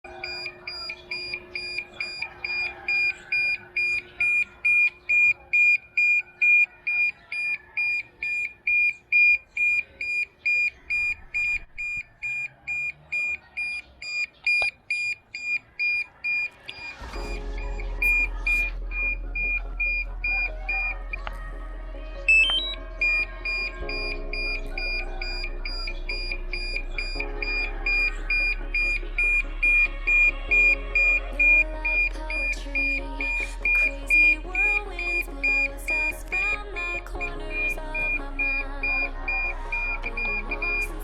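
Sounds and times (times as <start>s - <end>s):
remote controller beeping: 0.0s - 21.3s, 22.3s - 36.6s, 37.2s - 41.0s
low hum: 16.7s - 41.0s.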